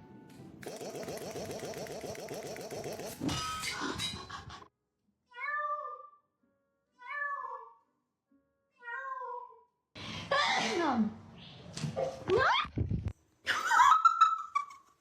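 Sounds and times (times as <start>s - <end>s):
cat meowing: 5.3s - 6.2s.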